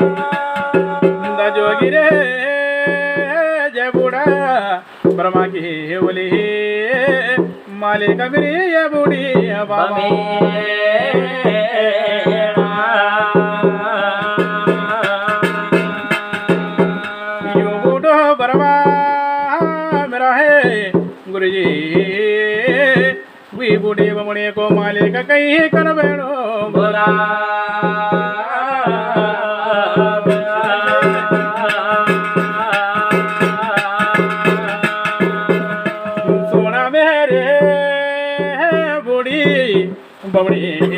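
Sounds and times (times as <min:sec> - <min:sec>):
drum beating steady rhythm: 0:00.0 - 0:40.9
held melody notes: 0:29.9 - 0:37.8
voice holding wavering notes: 0:30.3 - 0:31.6.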